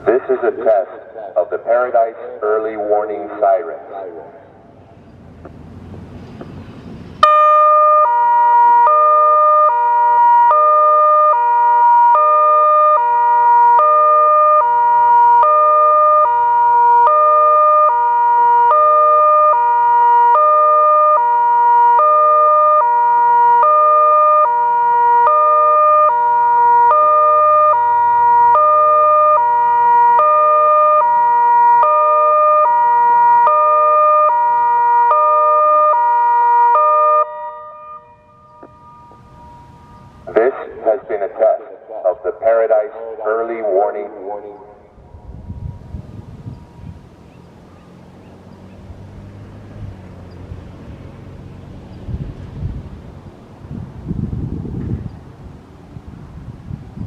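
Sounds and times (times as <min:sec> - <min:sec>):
hi-lo siren tone: 0:07.2 - 0:40.8, 0:44.0 - 0:47.4.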